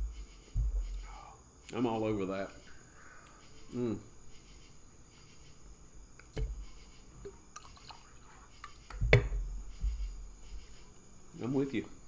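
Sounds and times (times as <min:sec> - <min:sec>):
knocks and thump: 0:00.0 - 0:01.0, 0:08.9 - 0:10.3.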